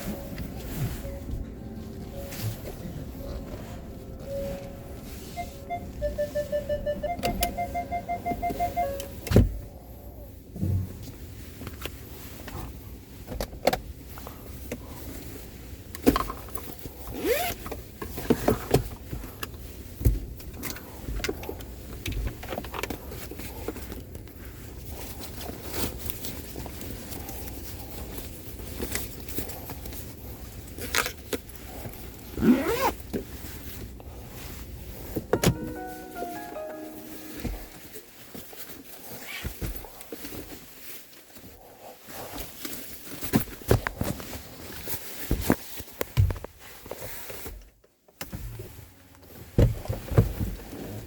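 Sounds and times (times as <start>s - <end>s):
vehicle warning chime beeping: 0.0s - 9.3s, 35.4s - 37.7s.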